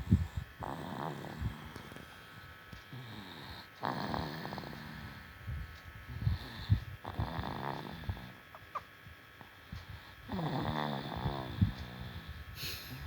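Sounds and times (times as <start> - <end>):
baby snoring: 0.6 - 1.9, 2.9 - 5.3, 6.1 - 8.9, 10.2 - 13.0.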